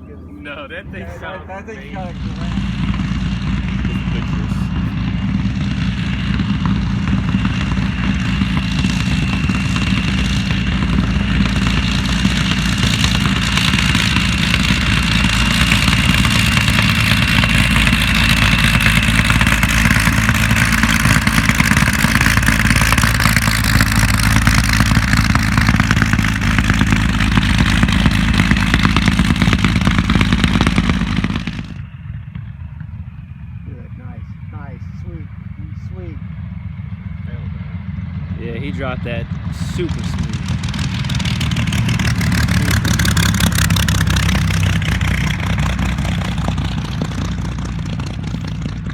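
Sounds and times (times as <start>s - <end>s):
large piston engine running: 0.0s - 48.9s.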